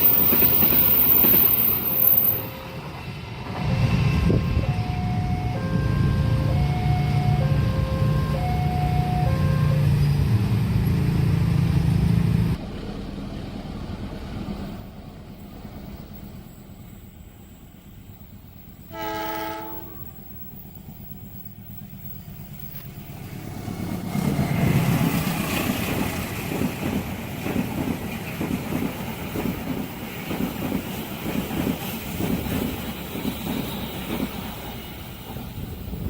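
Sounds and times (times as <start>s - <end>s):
train wheels clattering over rails: 0.0s - 3.8s, 20.4s - 36.0s
train horn blast: 3.6s - 10.2s, 18.9s - 20.3s.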